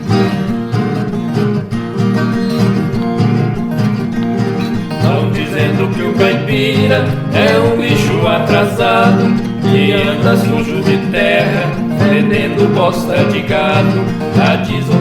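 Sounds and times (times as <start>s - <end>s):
strummed acoustic guitar: 0.0s - 15.0s
person singing: 4.9s - 15.0s.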